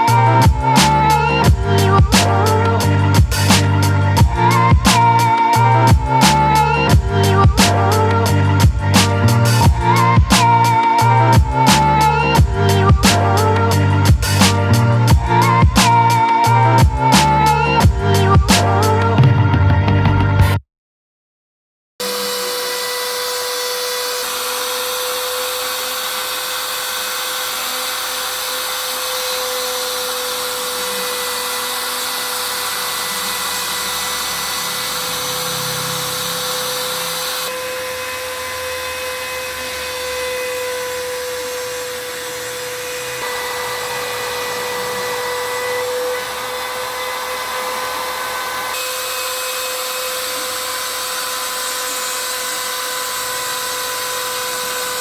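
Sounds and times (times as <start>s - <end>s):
loud hiss: 0.0s - 18.9s
spindle motor high whine: 0.0s - 19.3s, 22.0s - 55.0s.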